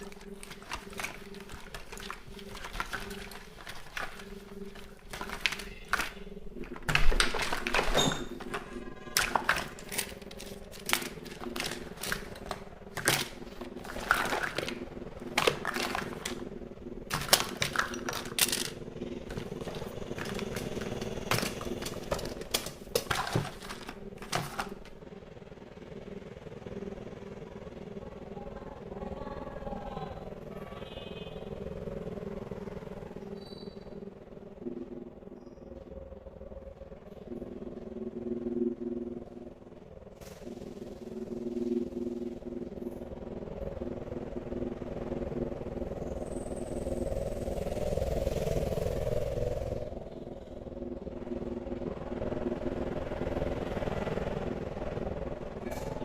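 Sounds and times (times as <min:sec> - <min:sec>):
clicks taps and rustles: 0:00.0 - 0:25.0
steady low hum: 0:00.0 - 0:30.6, 0:31.5 - 0:56.0.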